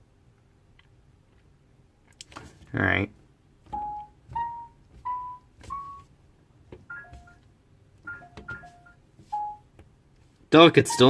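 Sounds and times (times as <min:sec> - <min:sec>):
washer control panel beeps: 0:03.7 - 0:06.0, 0:06.9 - 0:07.4, 0:08.1 - 0:09.7.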